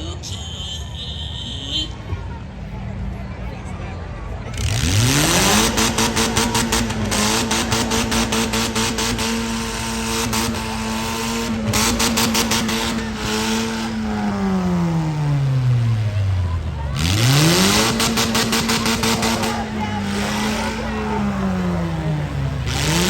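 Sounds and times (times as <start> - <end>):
car engine revving hard: 4.4 - 23.0.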